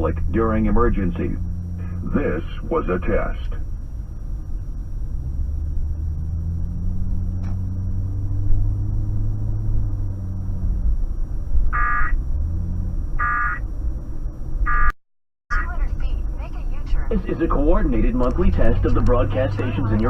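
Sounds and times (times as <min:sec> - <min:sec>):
radio static rumble and hum: 0:00.0 - 0:09.1, 0:10.1 - 0:12.3, 0:13.0 - 0:20.0.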